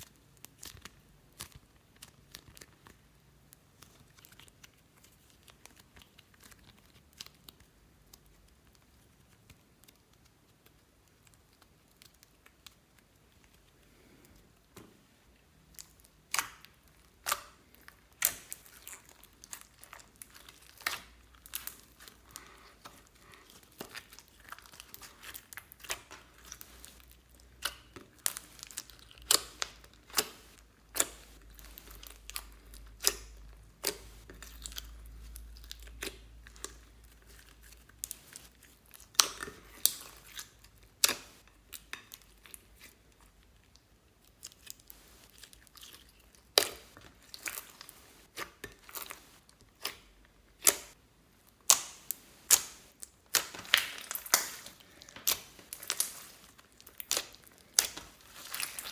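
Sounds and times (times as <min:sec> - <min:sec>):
slime popping and crackling: 0:15.6 - 0:42.9, 0:44.3 - 0:58.9.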